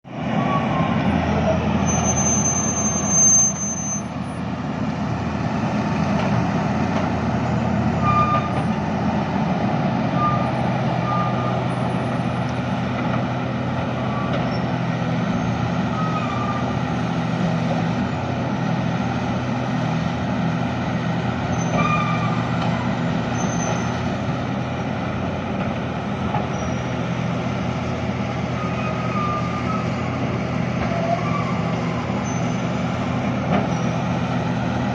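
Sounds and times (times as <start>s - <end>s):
excavator diesel engine running: 0.1s - 34.9s
high squeal: 0.4s - 4.4s, 21.5s - 22.4s, 28.6s - 30.0s, 30.9s - 32.7s.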